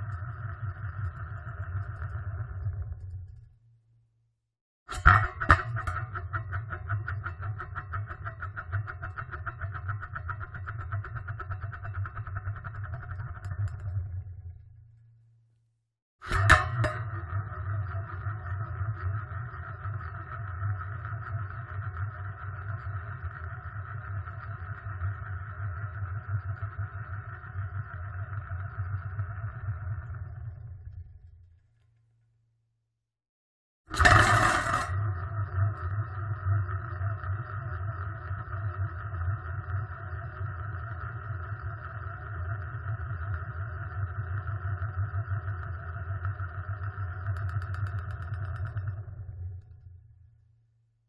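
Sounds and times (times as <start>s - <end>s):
tin lid spinning and rattling: 4.9s - 14.0s, 33.9s - 38.8s, 45.4s - 49.2s.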